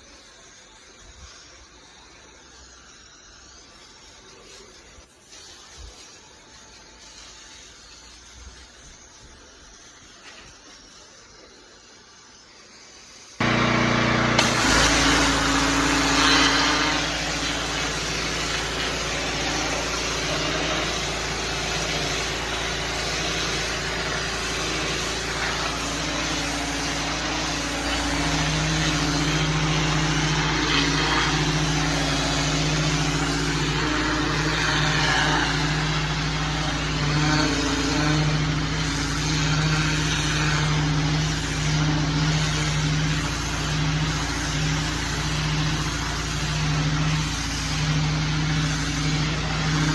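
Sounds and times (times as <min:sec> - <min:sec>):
broad hiss: 0:00.0 - 0:49.9
small petrol engine running: 0:13.4 - 0:49.9.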